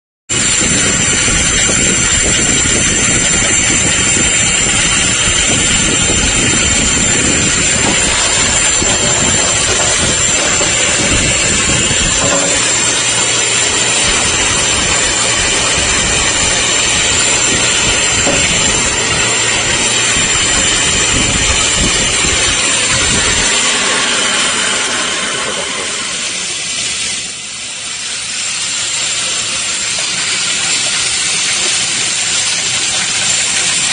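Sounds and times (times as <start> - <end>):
air hissing with high whistle: 0.3 - 33.9
low rumble: 0.4 - 25.9.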